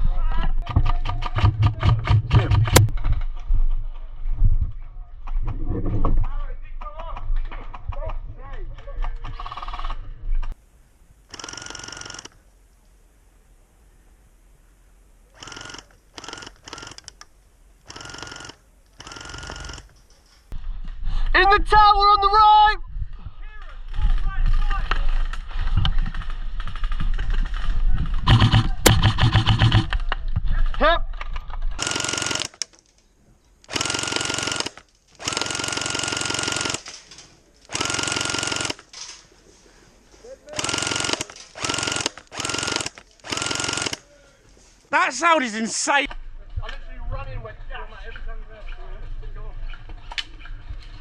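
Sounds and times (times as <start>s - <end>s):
airsoft gun full-auto bursts: 11.3s - 12.4s, 15.4s - 17.1s, 17.8s - 19.9s, 28.3s - 29.9s, 31.8s - 32.6s, 33.7s - 36.9s, 37.7s - 38.9s, 40.5s - 44.0s.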